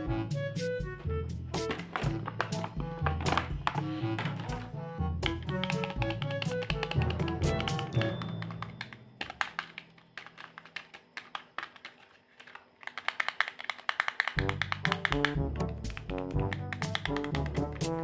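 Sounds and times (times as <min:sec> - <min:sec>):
background music: 0:00.0 - 0:10.6, 0:14.3 - 0:18.0
rapid tapping clicks: 0:05.2 - 0:18.0.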